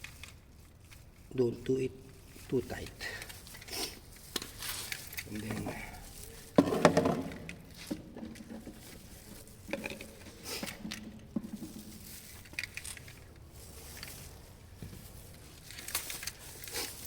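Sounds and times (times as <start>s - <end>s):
small objects rustling: 0.0s - 17.0s
small objects clicking and tapping: 2.8s - 5.7s.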